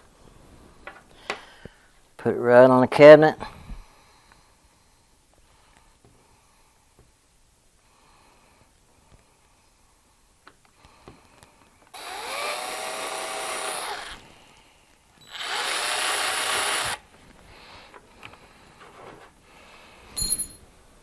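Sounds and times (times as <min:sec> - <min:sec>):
power drill whining: 0:11.9 - 0:14.2, 0:15.2 - 0:17.0.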